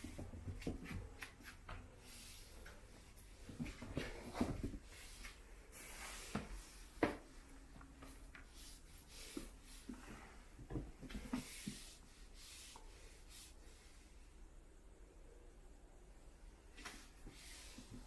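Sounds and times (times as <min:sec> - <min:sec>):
floor wiper rubbing over floor: 0:00.0 - 0:07.4, 0:08.0 - 0:13.8.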